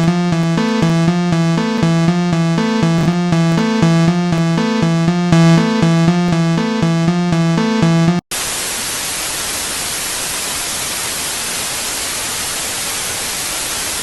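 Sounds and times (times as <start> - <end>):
synthesizer music with pulsing beat: 0.0 - 8.2
static hiss: 8.3 - 14.0.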